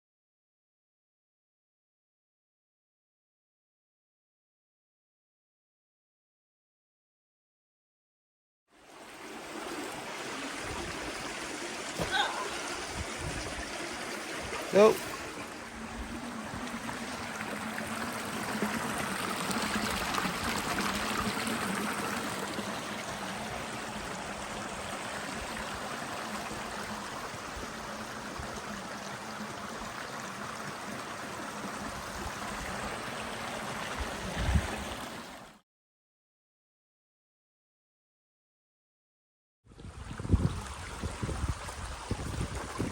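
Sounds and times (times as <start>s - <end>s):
small stream trickling: 8.7s - 35.6s, 39.7s - 42.9s.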